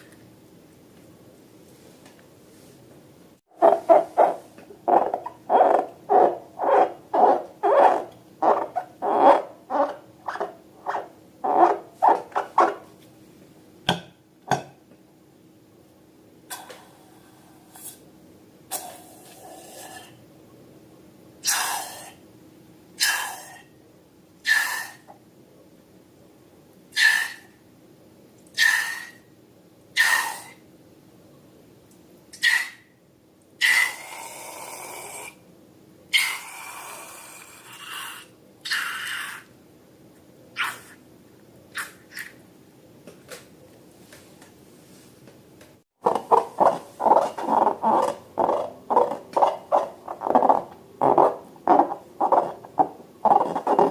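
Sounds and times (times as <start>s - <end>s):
balloon hooting squeaks: 3.6s - 12.8s.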